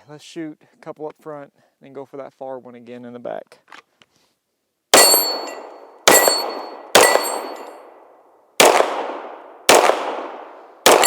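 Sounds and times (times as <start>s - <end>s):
pistol shots: 5.0s - 7.8s, 8.6s - 11.0s
steel target ringing clang: 5.0s - 7.9s.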